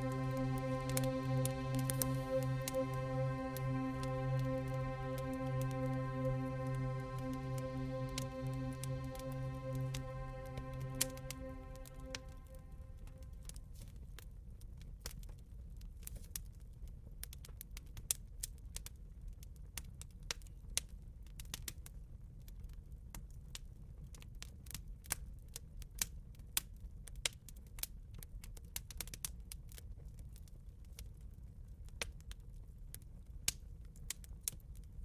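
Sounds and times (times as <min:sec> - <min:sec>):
low rumble: 0:00.0 - 0:13.4.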